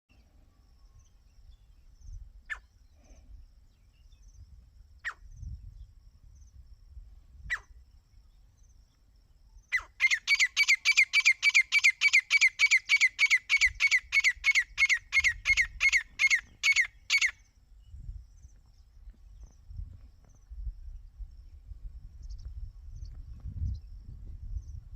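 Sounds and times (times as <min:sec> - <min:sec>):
partridge calling: 0:07.5 - 0:07.7, 0:09.7 - 0:17.4.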